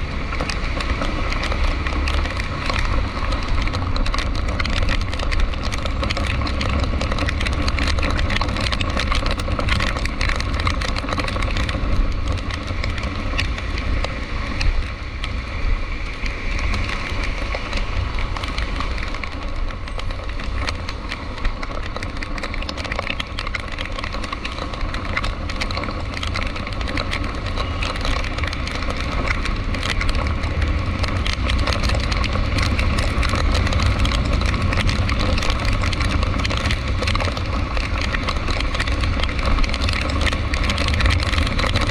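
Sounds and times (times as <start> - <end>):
car engine and road rumble: 0.0 - 41.9
raindrops ticking on car: 0.0 - 41.9.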